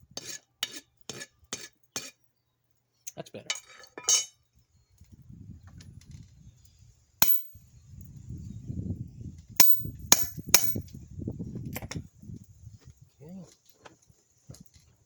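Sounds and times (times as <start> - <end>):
hammer striking steel on anvil: 4.0 - 4.3, 7.2 - 7.6, 9.6 - 10.8.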